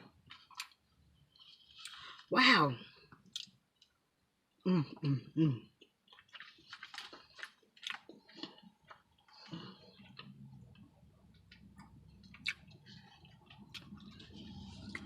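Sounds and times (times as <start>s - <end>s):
low steady hum: 0.0s - 15.0s
chewing: 5.8s - 15.0s.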